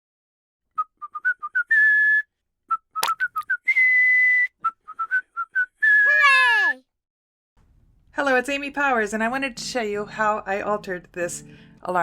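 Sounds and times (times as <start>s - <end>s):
person whistling a tune: 0.8s - 6.8s.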